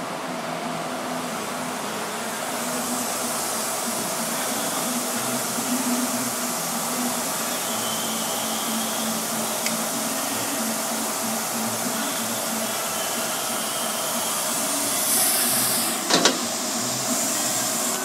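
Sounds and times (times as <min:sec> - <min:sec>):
machinery humming and whirring: 0:00.0 - 0:18.0.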